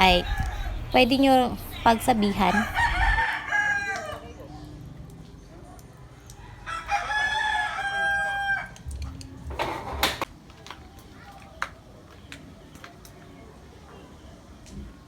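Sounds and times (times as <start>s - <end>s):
rooster crowing: 1.7s - 4.4s, 6.3s - 8.8s.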